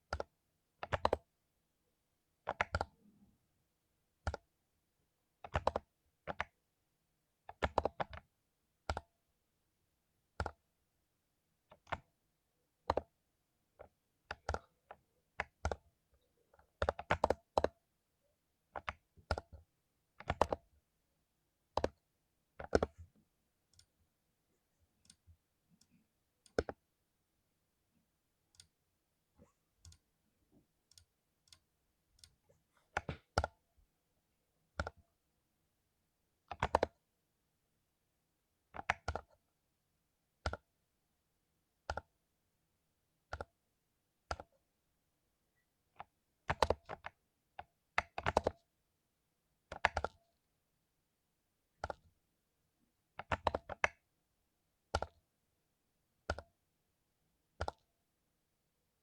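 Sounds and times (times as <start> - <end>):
mechanical keyboard typing: 0.1 - 1.3, 2.5 - 3.1, 5.4 - 6.6, 7.5 - 9.0, 11.7 - 12.1, 12.8 - 13.2, 13.8 - 15.8, 16.6 - 17.8, 18.8 - 19.6, 20.2 - 20.7, 21.7 - 22.0, 22.6 - 23.0, 34.8 - 35.0, 36.5 - 37.0, 38.8 - 39.4, 46.0 - 47.2, 48.0 - 48.6, 49.7 - 50.2, 51.8 - 52.1, 53.2 - 54.0.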